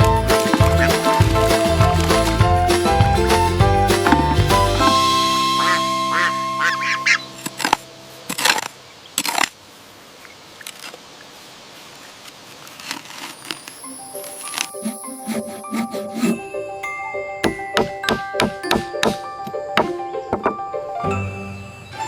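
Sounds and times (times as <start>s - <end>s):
held music chord: 0.0s - 8.3s
low steady hiss: 5.2s - 15.0s
short bird calls: 5.6s - 7.3s.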